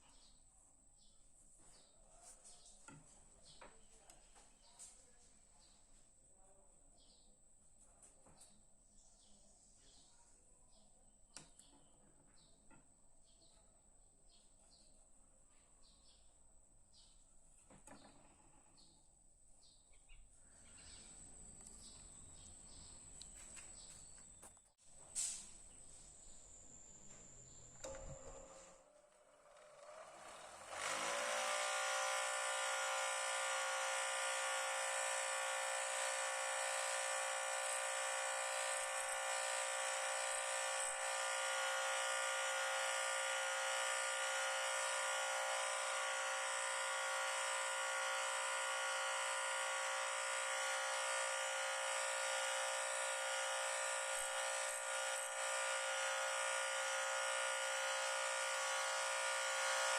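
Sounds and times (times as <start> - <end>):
power tool motor whine: 25.2 - 59.9.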